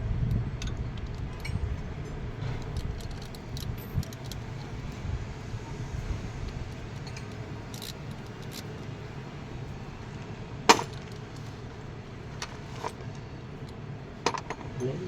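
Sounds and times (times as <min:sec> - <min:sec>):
steady low hum: 0:00.0 - 0:15.0
metal objects clinking: 0:10.7 - 0:11.5.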